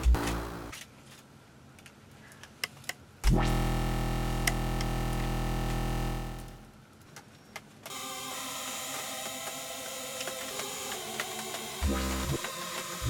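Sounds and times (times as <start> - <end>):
held synthesizer chord: 3.2 - 6.7.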